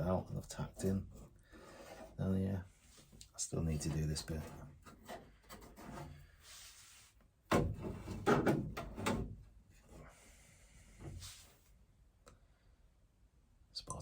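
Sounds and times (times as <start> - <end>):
handling knocks and clatter: 7.5 - 9.4.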